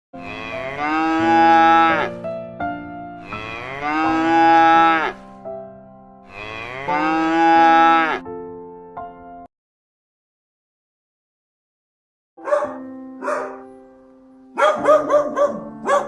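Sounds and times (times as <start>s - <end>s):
cow mooing: 0.2s - 2.2s, 3.2s - 5.2s, 6.3s - 8.2s
keyboard background music: 0.2s - 9.5s, 12.4s - 16.0s.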